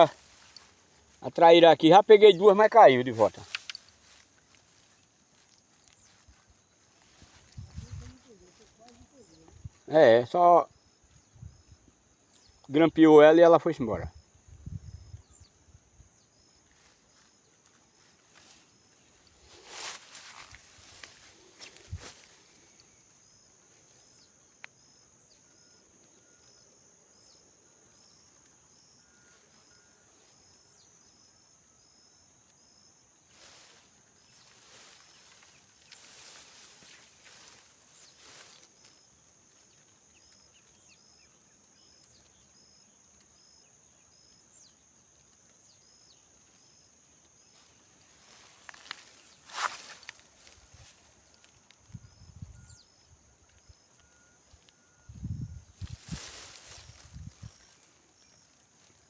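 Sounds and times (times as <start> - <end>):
soft rustles: 0.0 - 1.3, 2.8 - 9.9, 16.6 - 24.7, 33.3 - 42.4, 46.2 - 59.0
insect chirping: 0.0 - 59.0
insects droning: 0.0 - 59.0.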